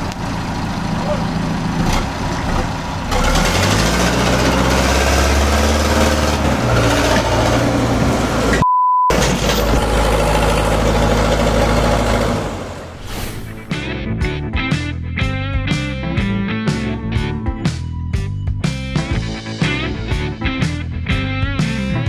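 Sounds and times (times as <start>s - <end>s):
vehicle engine running loudly: 0.0s - 13.6s
pure beep tone: 8.6s - 9.1s.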